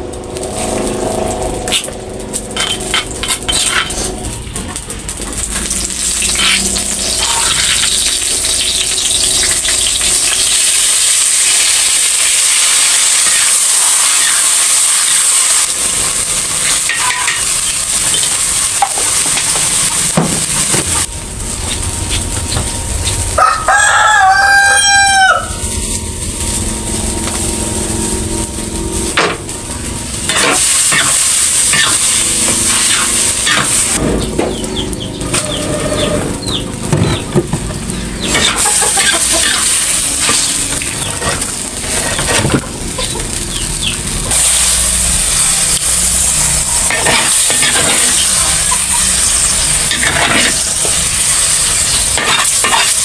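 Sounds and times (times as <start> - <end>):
food sizzling in a pan: 0.4 - 34.0, 37.8 - 53.0
rooster crowing: 23.3 - 25.8, 35.3 - 36.4.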